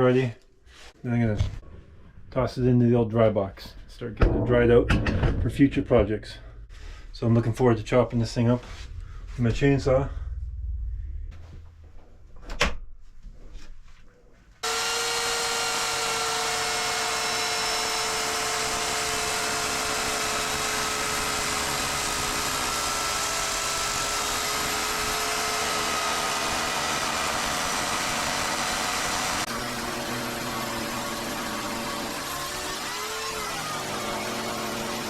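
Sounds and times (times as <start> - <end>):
knocks: 4.2 - 5.8
chainsaw engine running: 14.6 - 35.0.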